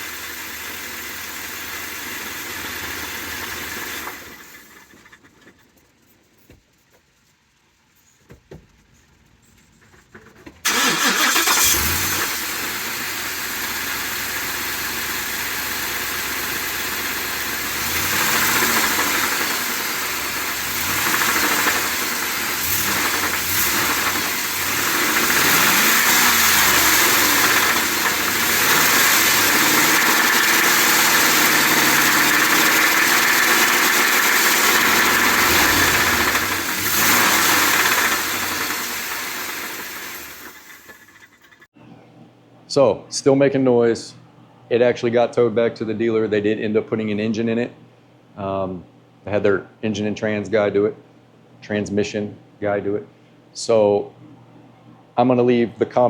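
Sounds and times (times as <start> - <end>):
engine starting and idling: 0.0 - 5.6, 10.6 - 41.7.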